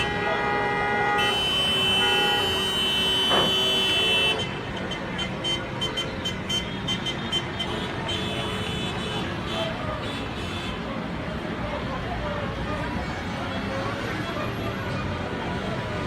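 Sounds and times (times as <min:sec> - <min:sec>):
rapid beeping horn: 0:00.0 - 0:09.0
car horns honking: 0:00.0 - 0:10.8.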